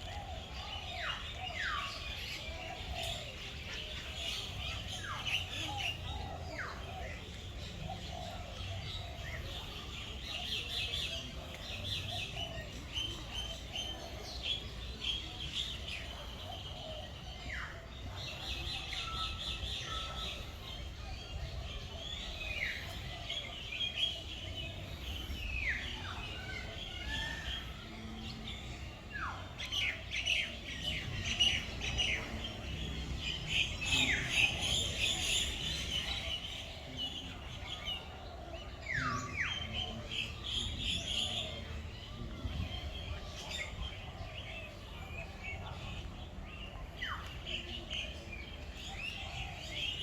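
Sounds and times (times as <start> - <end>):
birds chirping: 0.0 - 50.0.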